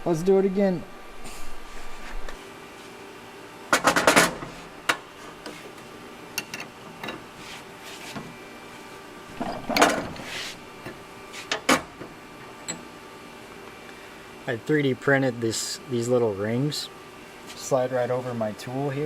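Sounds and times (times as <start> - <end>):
steady shop hum: 0.0 - 19.0
metal tools clanking and rattling: 9.3 - 10.2.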